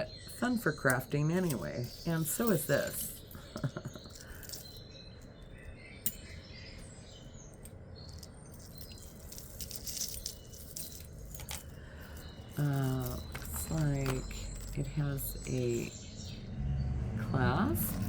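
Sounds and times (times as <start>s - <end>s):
jewelry clinking and rattling: 0.0s - 16.5s, 17.3s - 18.0s.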